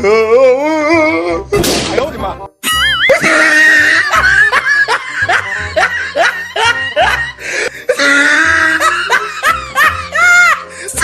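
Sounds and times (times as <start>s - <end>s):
background music with low beat: 1.3s - 11.0s
person laughing: 2.6s - 10.7s.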